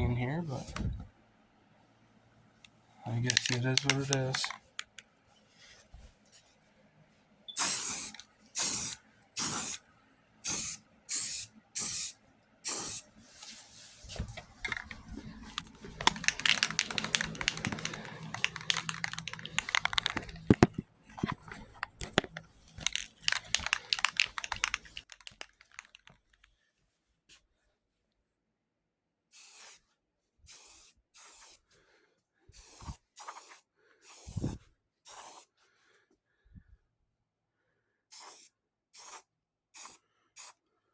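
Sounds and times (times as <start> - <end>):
aerosol can spraying: 7.6 - 9.8, 10.4 - 13.0, 15.6 - 20.6, 32.6 - 35.5, 38.2 - 39.2, 39.8 - 40.6.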